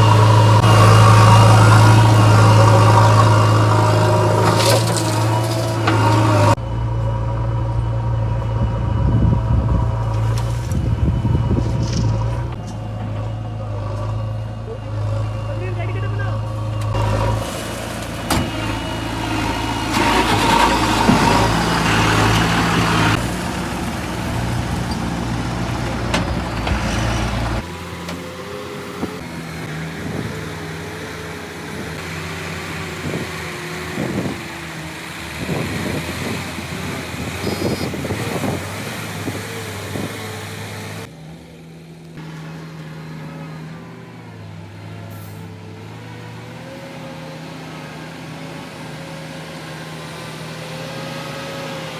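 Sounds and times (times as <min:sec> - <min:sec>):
diesel engine running: 0:00.0 - 0:51.9.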